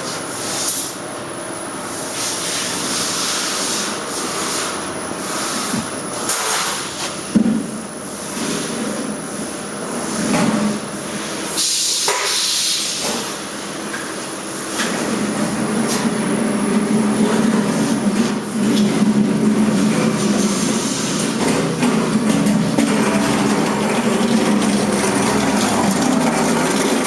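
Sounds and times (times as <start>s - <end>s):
factory machinery din: 14.7s - 27.0s.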